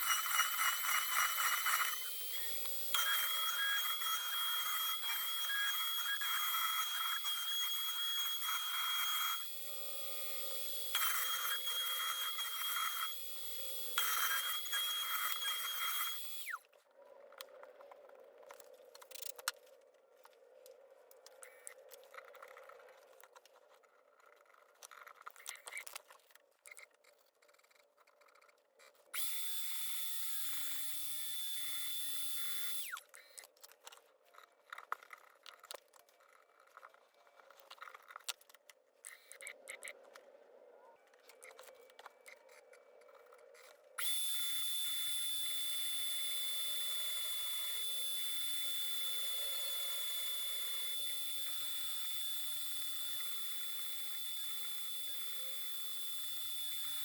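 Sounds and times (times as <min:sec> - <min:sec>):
mill spindle high whine: 0:00.0 - 0:16.6, 0:29.2 - 0:33.0, 0:44.0 - 0:57.0.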